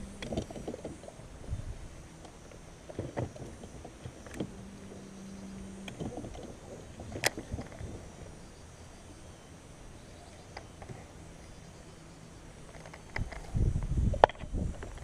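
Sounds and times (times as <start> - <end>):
knocks and clunks on a boat: 0.0 - 1.8, 2.8 - 8.4
low rumble: 0.0 - 15.0
steady hum: 0.0 - 15.0.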